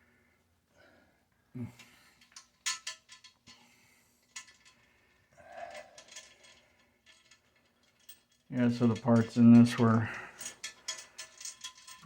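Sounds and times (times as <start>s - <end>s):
metal bolts and nuts clinking: 2.2s - 3.6s, 4.2s - 12.0s.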